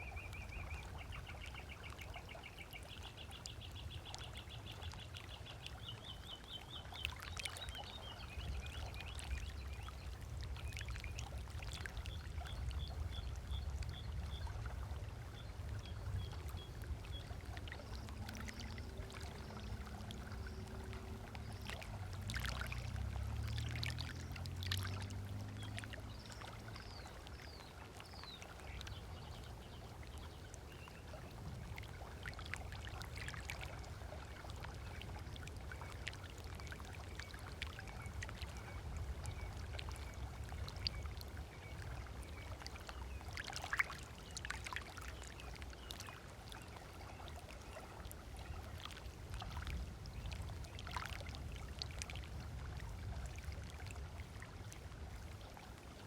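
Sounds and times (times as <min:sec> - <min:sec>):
small waves lapping on shore: 0:00.0 - 0:56.0
low rumble: 0:12.6 - 0:26.3.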